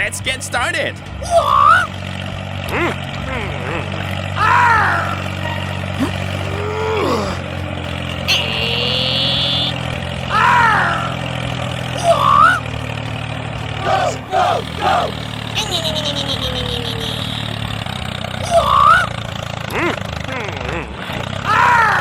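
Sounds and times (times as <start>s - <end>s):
vehicle engine running: 0.0s - 22.0s
rising-and-falling pitched calls: 5.9s - 17.6s.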